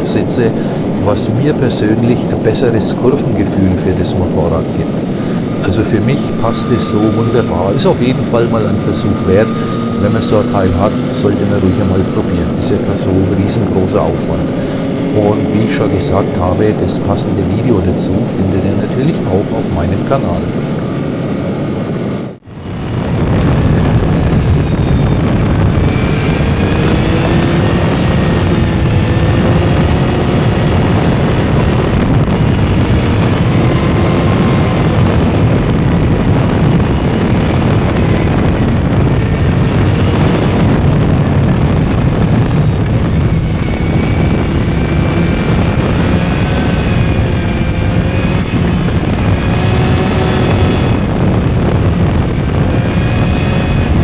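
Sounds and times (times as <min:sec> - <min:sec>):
wind rush: 0:00.0 - 0:54.0
motorcycle engine running: 0:22.4 - 0:54.0.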